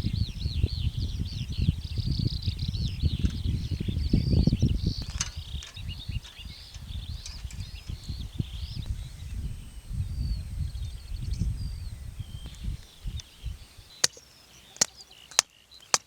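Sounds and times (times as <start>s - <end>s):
uneven low rumble: 0.0s - 13.7s
small birds chirping: 0.0s - 16.0s
sharp click: 5.0s - 8.0s.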